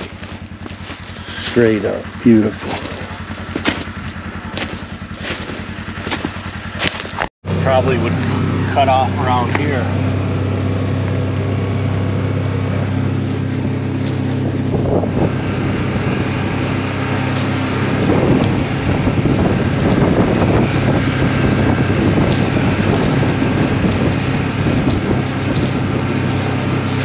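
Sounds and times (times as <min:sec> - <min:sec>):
vehicle engine droning: 0:00.0 - 0:27.0
wind buffeting microphone: 0:13.4 - 0:27.0.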